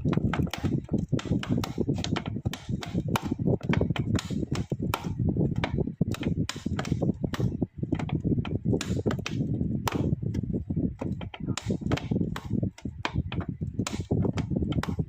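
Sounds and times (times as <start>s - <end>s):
irregular knocks and clatter: 0.0s - 15.0s
steady low rumble: 0.0s - 15.0s.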